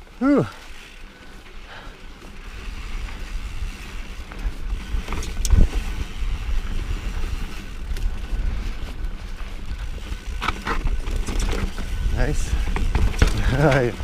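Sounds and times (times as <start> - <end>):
mountain bike rolling over rough trail: 0.0 - 14.0
wind buffeting microphone: 2.7 - 14.0.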